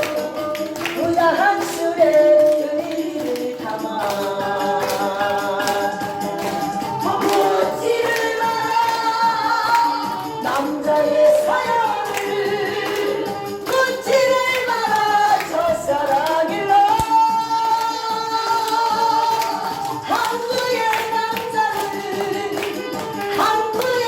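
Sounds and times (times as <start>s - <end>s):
instrumental backing: 0.0s - 24.0s.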